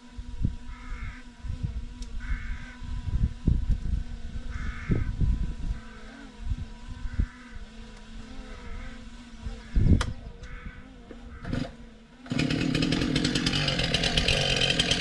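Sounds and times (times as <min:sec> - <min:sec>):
engine idling: 0:11.3 - 0:15.0.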